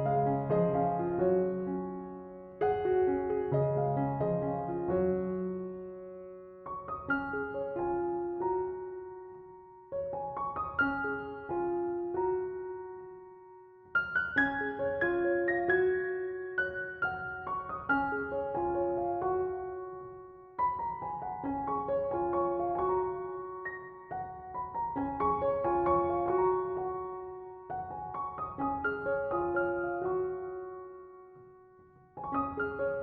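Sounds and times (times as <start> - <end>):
gentle piano music: 0.0 - 33.0.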